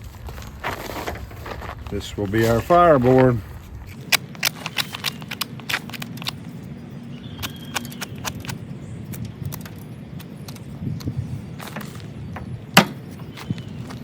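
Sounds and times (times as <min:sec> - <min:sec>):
low rumble: 0:00.0 - 0:04.4.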